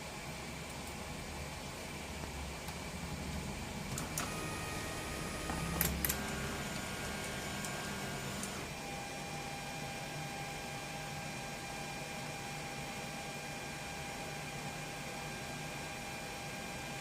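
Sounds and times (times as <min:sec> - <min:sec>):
stepper motors whining: 0:03.9 - 0:08.7.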